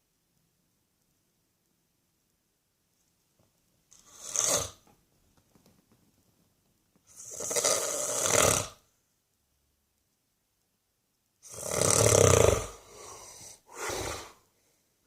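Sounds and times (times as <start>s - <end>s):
man snoring: 4.0s - 4.8s, 7.1s - 8.8s, 11.4s - 14.4s.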